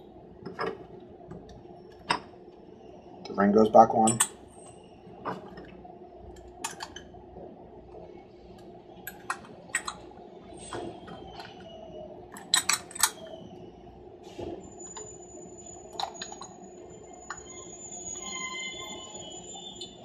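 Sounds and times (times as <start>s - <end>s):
faint steady hum: 0.0s - 20.0s
metal lock parts clicking: 12.3s - 13.3s.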